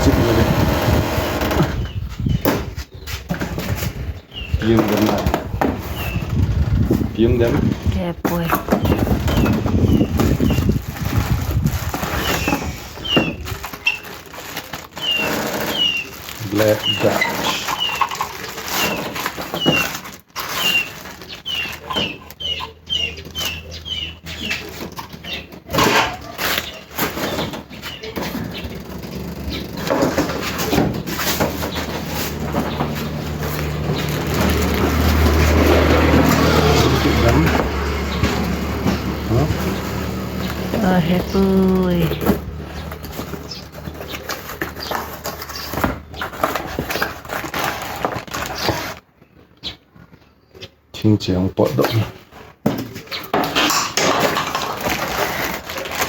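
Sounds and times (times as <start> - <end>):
objects knocking and rattling: 0.0 - 22.4, 24.3 - 49.2, 51.8 - 56.0
loud rustling: 3.0 - 49.2, 52.3 - 56.0
small bird chirping: 20.5 - 25.5.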